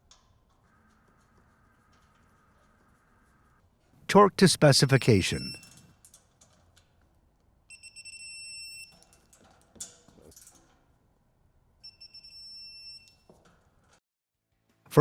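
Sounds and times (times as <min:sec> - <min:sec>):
electronic beeps: 0:04.6 - 0:05.6.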